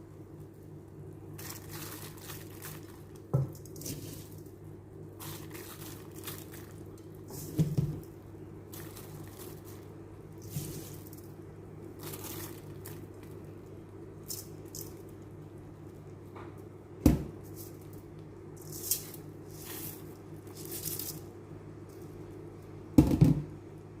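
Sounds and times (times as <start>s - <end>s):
steady low hum: 0.0s - 24.0s
scraping and rustling: 1.4s - 4.6s, 5.2s - 13.4s, 17.4s - 21.3s.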